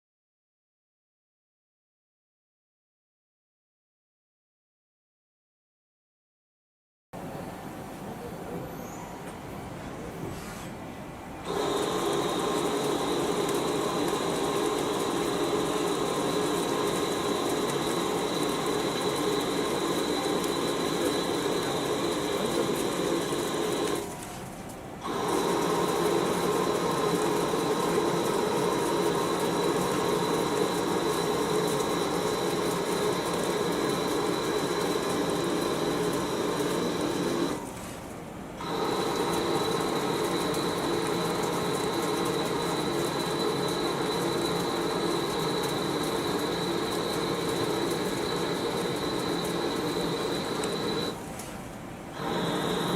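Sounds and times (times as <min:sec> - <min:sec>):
lathe cutting metal: 0:11.5 - 0:24.0, 0:25.0 - 0:37.6, 0:38.6 - 0:51.2, 0:52.2 - 0:52.9
constant high whine: 0:38.8 - 0:51.2.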